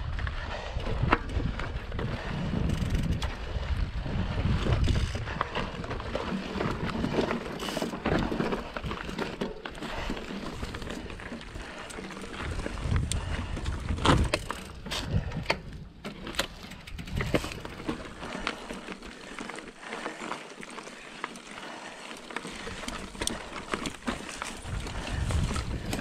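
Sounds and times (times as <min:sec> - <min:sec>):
wind rumble on microphone: 0:00.0 - 0:07.4, 0:10.0 - 0:16.0, 0:16.8 - 0:18.5, 0:22.7 - 0:26.0
bike clicks and rattles: 0:00.0 - 0:26.0
tyres crunching over rocks: 0:04.4 - 0:26.0.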